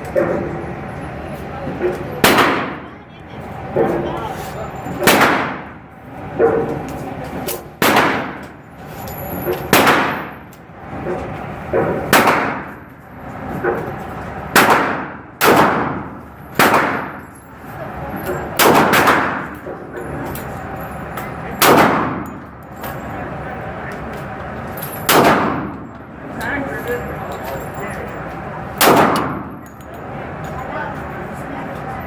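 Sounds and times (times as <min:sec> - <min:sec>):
gunshots with echo: 0:02.2 - 0:02.8, 0:05.0 - 0:05.8, 0:07.8 - 0:08.5, 0:09.7 - 0:10.4, 0:12.1 - 0:12.8, 0:14.5 - 0:17.2, 0:18.6 - 0:19.6, 0:21.6 - 0:22.3, 0:25.1 - 0:25.7, 0:28.8 - 0:29.5.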